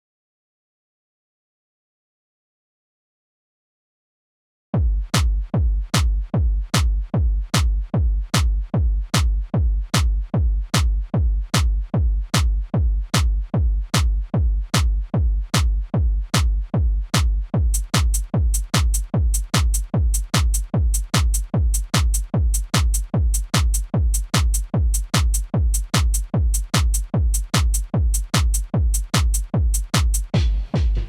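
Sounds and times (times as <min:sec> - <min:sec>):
electronic kick drum with clicks: 0:04.8 - 0:31.0
fast hi-hats: 0:17.2 - 0:31.0.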